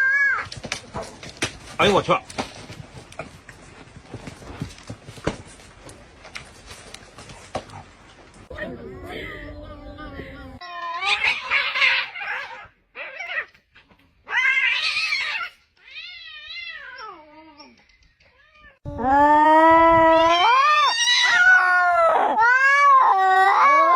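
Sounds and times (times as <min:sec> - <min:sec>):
cats yowling: 0:09.0 - 0:13.5, 0:18.6 - 0:23.9.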